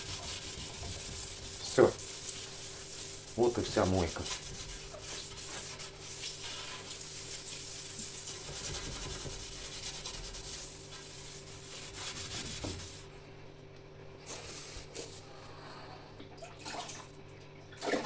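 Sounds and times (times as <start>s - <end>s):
wet sponge rubbing on glass: 0.0s - 13.1s.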